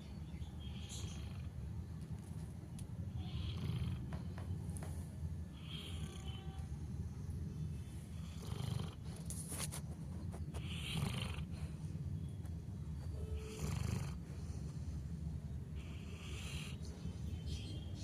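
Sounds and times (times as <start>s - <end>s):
dog snoring: 3.2s - 4.2s, 8.2s - 9.1s, 10.6s - 11.6s, 13.2s - 14.2s, 15.8s - 16.9s
noisy breaths: 10.5s - 12.5s, 13.3s - 17.3s.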